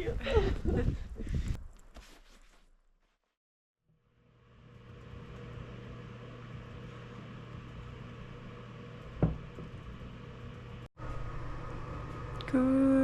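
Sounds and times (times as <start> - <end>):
low machine hum with hiss: 4.4 - 13.0.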